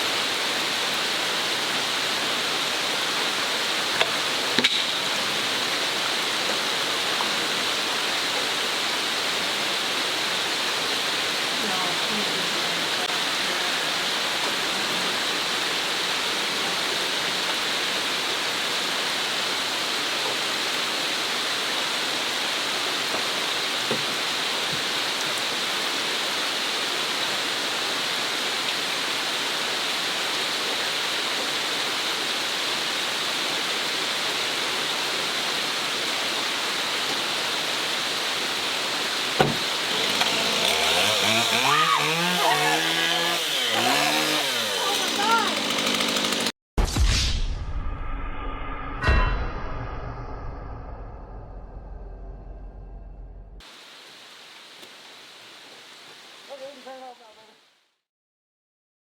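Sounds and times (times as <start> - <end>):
steady rain hiss: 0.0 - 45.5, 53.6 - 58.0
sharp knock: 39.4 - 39.6.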